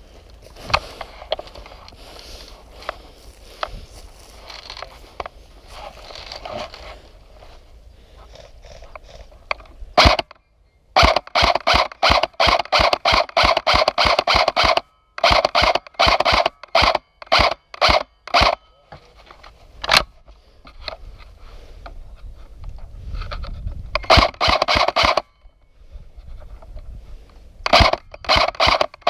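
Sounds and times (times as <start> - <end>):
airsoft gun shots: 10.0 - 10.3, 11.0 - 18.6, 24.0 - 25.2, 27.7 - 29.0.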